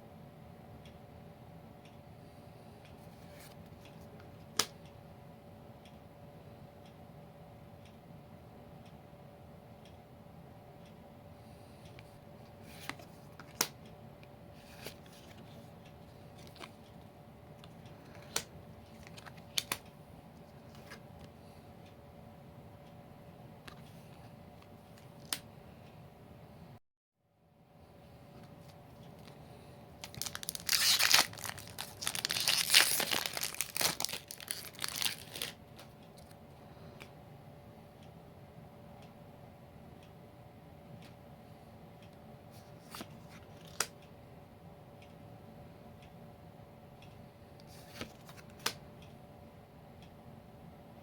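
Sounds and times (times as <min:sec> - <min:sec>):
trading cards clicking and snapping: 0:18.0 - 0:19.9
wrapper tearing and crumpling: 0:30.1 - 0:35.6.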